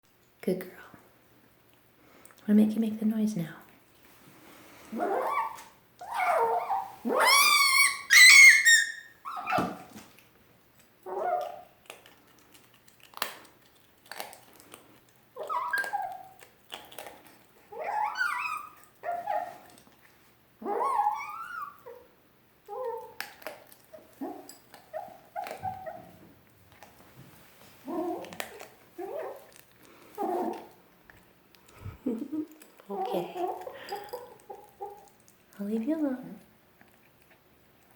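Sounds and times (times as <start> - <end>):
dog squealing and whining: 4.9 - 9.9, 11.0 - 11.7, 15.4 - 16.4, 17.7 - 19.8, 20.6 - 22.1, 22.7 - 23.2, 23.9 - 26.2, 27.8 - 29.5, 30.2 - 30.8.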